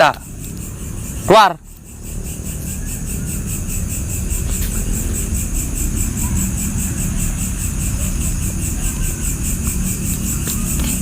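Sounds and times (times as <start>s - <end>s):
insects chirping: 0.0s - 11.0s
low rumble: 0.2s - 11.0s.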